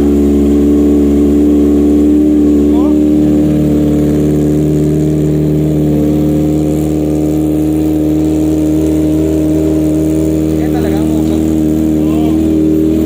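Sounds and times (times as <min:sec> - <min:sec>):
motorcycle engine idling: 0:00.0 - 0:13.0.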